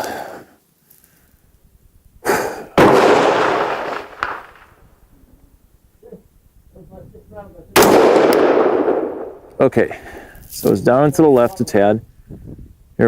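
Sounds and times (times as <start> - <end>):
rifle shot with echo: 2.8 - 4.8, 7.8 - 9.6.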